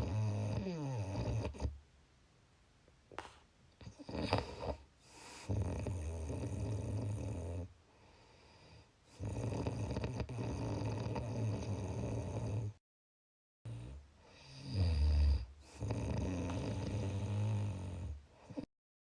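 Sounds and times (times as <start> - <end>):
person snoring: 3.8 - 7.7, 9.1 - 12.8, 13.7 - 18.7.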